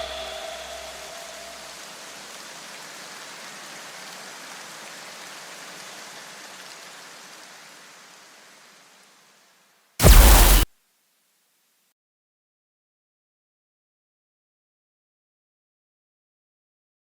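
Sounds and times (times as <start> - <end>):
steady hiss like rain: 0.0 - 11.9.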